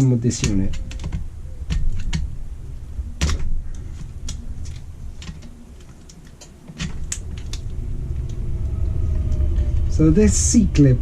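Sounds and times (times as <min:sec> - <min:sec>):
metal parts clicking and tapping: 0:00.0 - 0:02.4, 0:03.2 - 0:08.4
low hum: 0:00.2 - 0:11.0.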